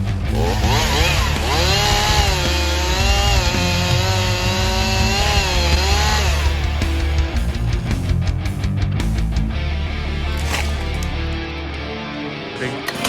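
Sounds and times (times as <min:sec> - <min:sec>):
chainsaw cutting tree trunk: 0:00.3 - 0:07.4.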